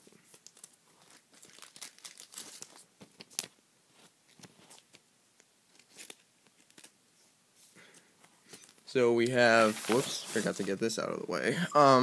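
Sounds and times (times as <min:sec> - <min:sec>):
plastic card sleeves crinkling: 0:00.3 - 0:03.6, 0:05.7 - 0:07.0, 0:09.4 - 0:10.9.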